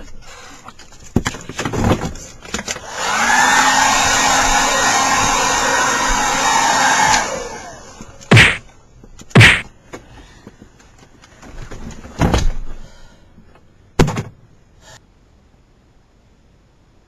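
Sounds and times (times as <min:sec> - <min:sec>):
loud thuds and bangs: 0:08.3 - 0:08.7, 0:09.3 - 0:09.7.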